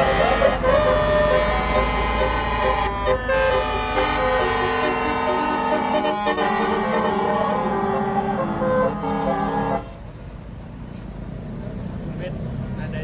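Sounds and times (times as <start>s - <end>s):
multi-tone air horn melody: 0.0s - 10.0s
bus engine rumble: 0.0s - 13.0s.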